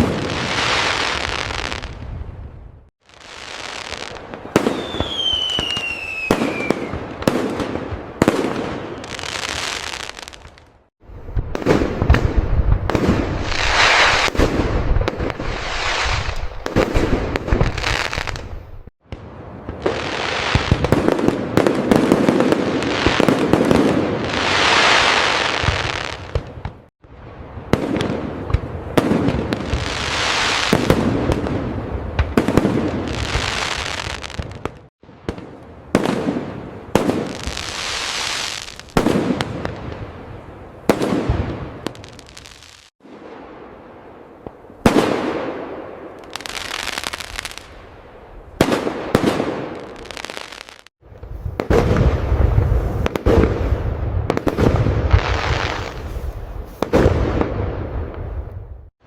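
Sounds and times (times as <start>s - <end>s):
fireworks bangs and crackling: 0.0s - 58.9s
falling firework whistle: 3.9s - 7.2s.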